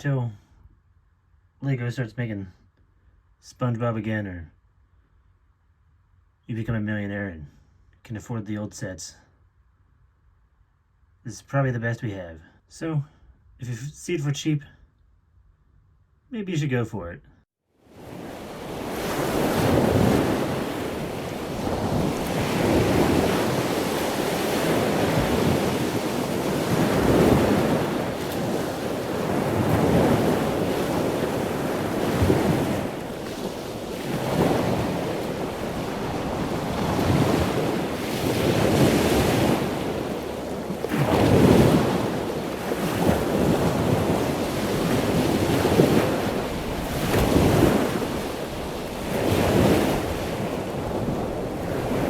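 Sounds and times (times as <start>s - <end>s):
ocean waves surging: 17.8s - 52.0s.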